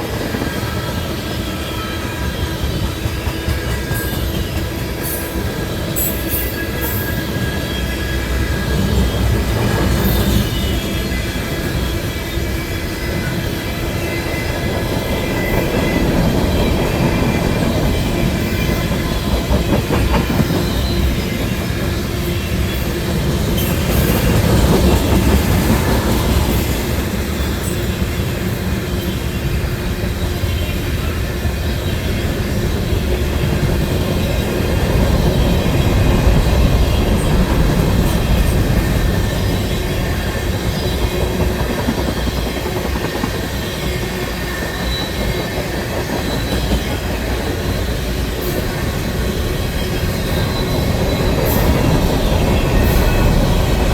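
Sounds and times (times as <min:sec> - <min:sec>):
freight train wheels rumbling: 0:00.0 - 0:53.9
high wheel squeal: 0:00.1 - 0:29.6, 0:42.2 - 0:53.9.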